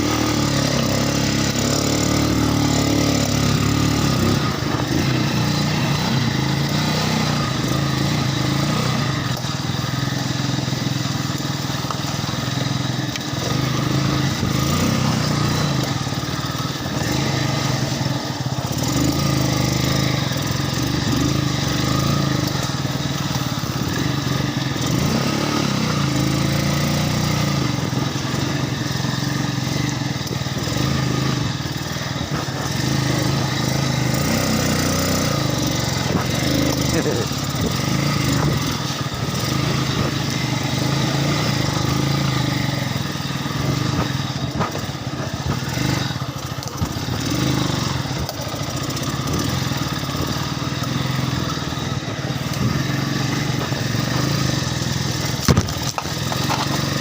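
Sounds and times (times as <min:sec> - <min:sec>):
vehicle engine running: 0:00.0 - 0:57.0.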